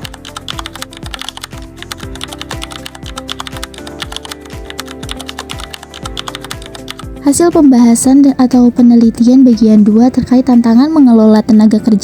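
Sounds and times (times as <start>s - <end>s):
rapid keyboard typing: 0.0s - 8.4s
background music with steady beat: 0.0s - 12.0s.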